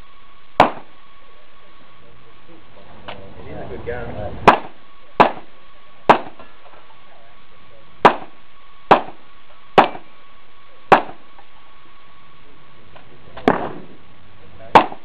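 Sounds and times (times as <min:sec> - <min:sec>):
pistol shots: 0:00.6 - 0:01.0, 0:04.4 - 0:06.4, 0:08.0 - 0:09.2, 0:09.8 - 0:10.1, 0:10.9 - 0:11.3, 0:13.4 - 0:14.0, 0:14.7 - 0:15.0.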